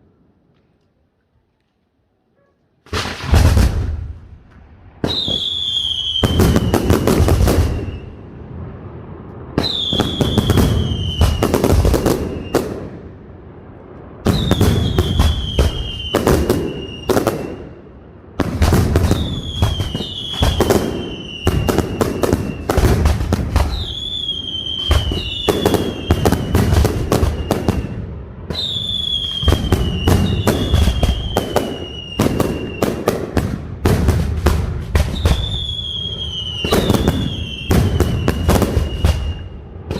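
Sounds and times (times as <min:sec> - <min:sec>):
firework bangs: 0:02.8 - 0:39.9
firework whistle falling in pitch: 0:05.0 - 0:08.2, 0:19.0 - 0:23.0, 0:23.6 - 0:32.9, 0:35.0 - 0:39.9.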